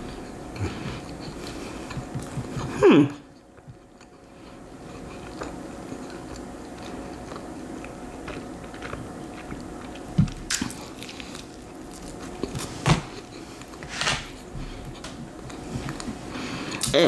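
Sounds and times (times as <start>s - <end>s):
biting and chewing toast: 4.8s - 14.4s.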